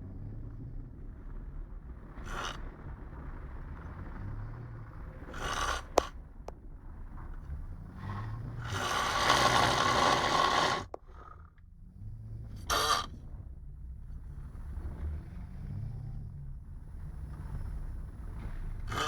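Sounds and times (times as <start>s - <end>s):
man snoring heavily: 5.3s - 6.1s, 8.0s - 11.0s.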